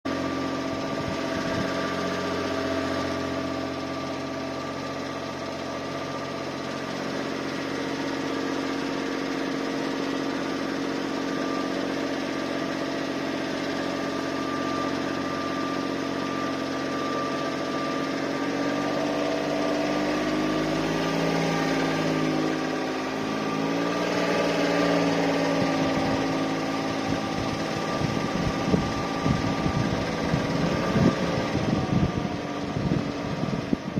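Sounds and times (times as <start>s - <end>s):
car engine at low speed: 0.0s - 33.9s
thin steady high tone: 10.0s - 32.7s.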